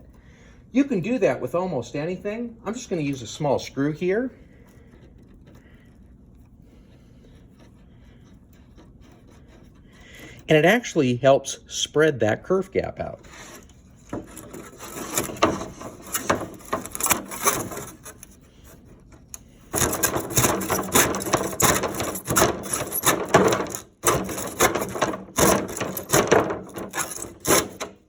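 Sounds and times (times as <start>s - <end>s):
hand saw cutting wood: 7.4s - 11.1s, 13.2s - 18.4s, 19.7s - 28.0s.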